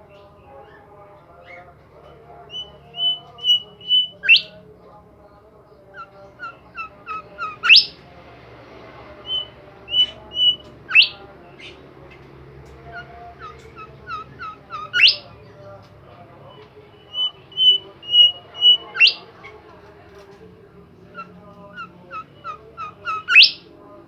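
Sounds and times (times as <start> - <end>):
songbird whistling phrases: 2.5 - 4.6, 6.0 - 8.0, 9.2 - 11.8, 13.0 - 15.4, 16.9 - 19.3, 21.1 - 23.7.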